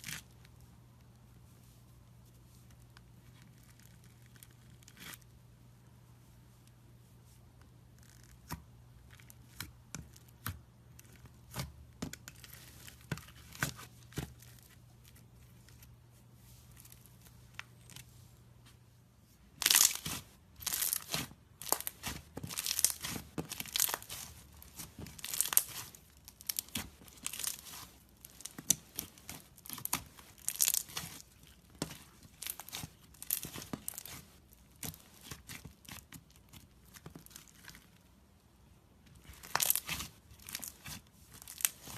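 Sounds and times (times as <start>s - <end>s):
slime crust crackling: 19.5s - 38.1s, 39.1s - 41.9s.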